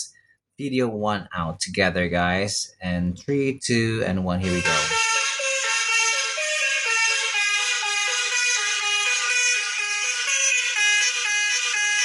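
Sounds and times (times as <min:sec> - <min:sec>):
car horn melody: 0:04.4 - 0:12.0.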